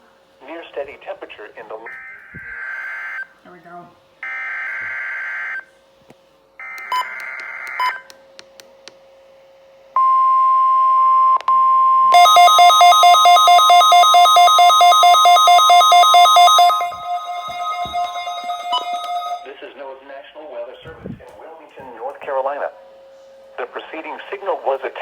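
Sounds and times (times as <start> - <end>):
rapid two-pitch alarm beeping: 12.1 - 19.5
steady warning tone: 12.1 - 19.6.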